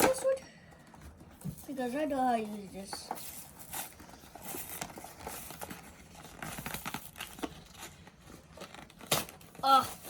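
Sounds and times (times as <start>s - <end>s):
plastic packaging crinkling: 2.4s - 10.0s.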